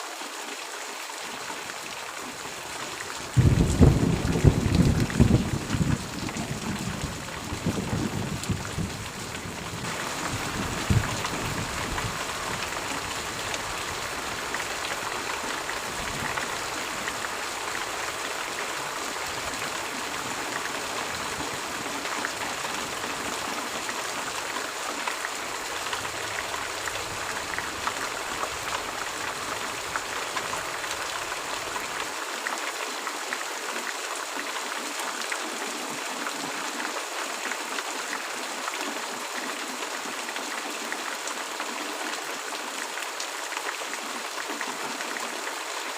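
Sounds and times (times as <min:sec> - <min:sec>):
steady rain falling: 0:00.0 - 0:45.9
thunder rumbling: 0:03.3 - 0:14.8
thunder crack: 0:03.4 - 0:09.1, 0:09.8 - 0:11.6.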